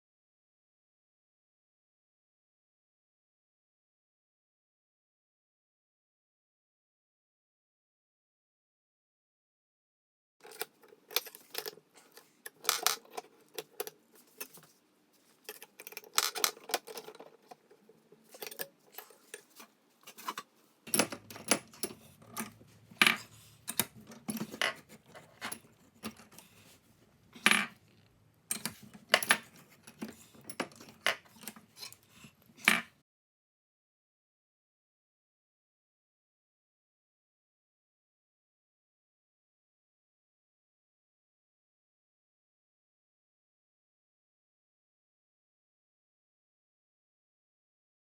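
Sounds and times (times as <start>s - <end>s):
metal tools clinking and tapping: 18.3s - 26.7s.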